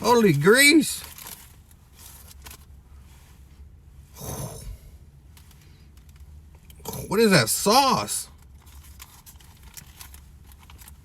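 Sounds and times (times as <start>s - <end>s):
person breathing: 4.2s - 5.9s.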